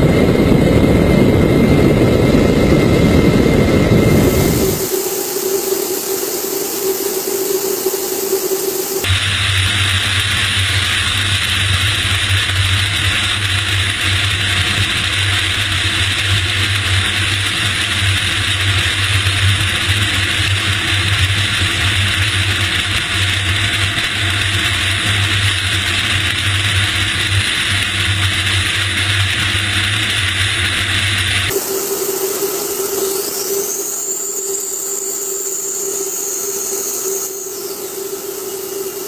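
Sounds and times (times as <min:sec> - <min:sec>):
aircraft engine hum: 0:00.0 - 0:39.0
airflow hiss: 0:02.4 - 0:09.1, 0:31.5 - 0:39.0.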